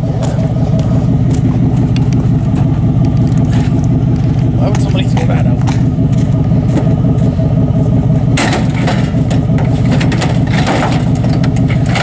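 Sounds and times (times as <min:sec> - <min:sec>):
pickup truck engine running: 0:00.0 - 0:12.0
metal clatter and rattling: 0:01.2 - 0:07.0, 0:08.3 - 0:12.0.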